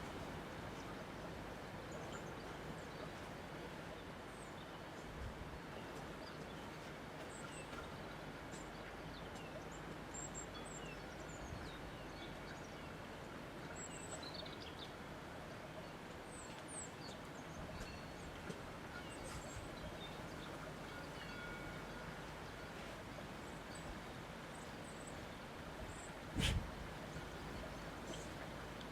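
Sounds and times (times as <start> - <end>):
rushing wind: 25.6 - 27.3.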